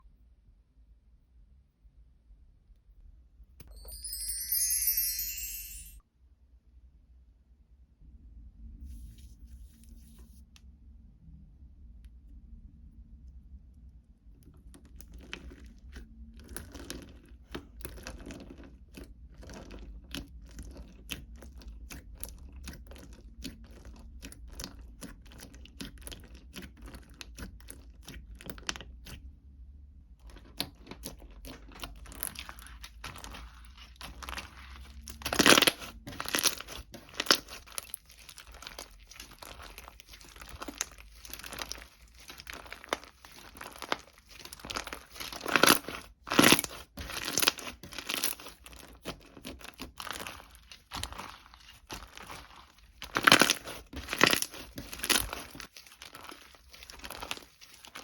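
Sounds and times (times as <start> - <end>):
material crinkling: 30.2 - 58.0.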